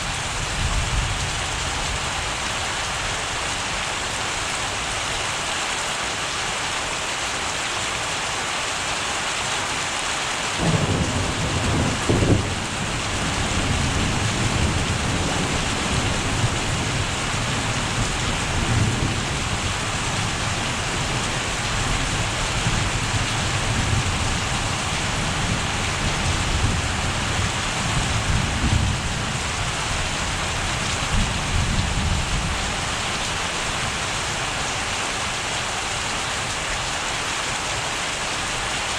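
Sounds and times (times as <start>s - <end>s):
steady rain: 0.0s - 38.9s
thunder clap and rumble: 10.6s - 30.0s.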